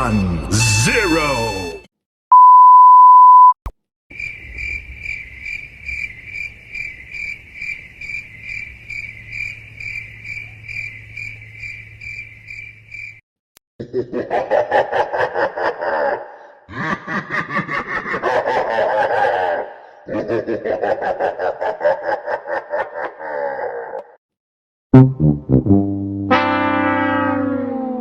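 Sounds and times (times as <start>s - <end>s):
loud steady beep: 2.3s - 3.6s
crickets chirping sound effect: 4.1s - 13.2s
rhythmic laughter: 13.8s - 24.0s.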